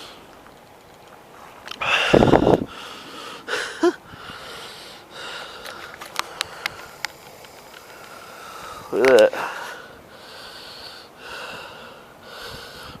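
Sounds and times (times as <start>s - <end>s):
sharp clicks: 9.0s - 9.3s.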